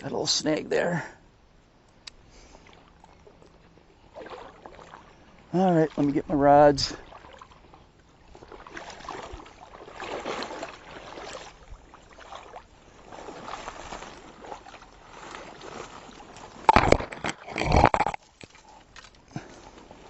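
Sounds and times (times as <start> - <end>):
water sloshing and scraping: 2.2 - 20.0
gear knocking against kayak: 16.6 - 19.1.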